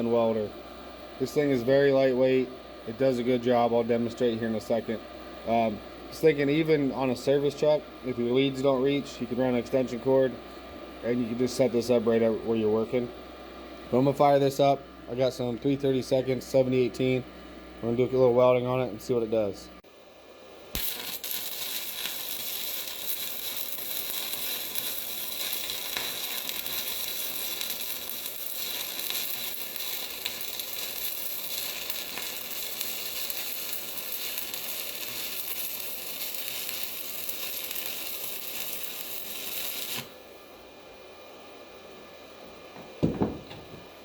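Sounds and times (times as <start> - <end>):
welding arc hissing: 20.7 - 40.4.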